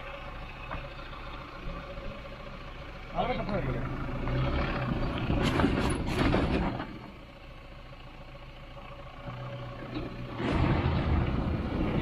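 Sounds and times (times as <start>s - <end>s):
off-road vehicle engine running: 0.0s - 12.0s
clattering and knocking: 5.2s - 7.1s.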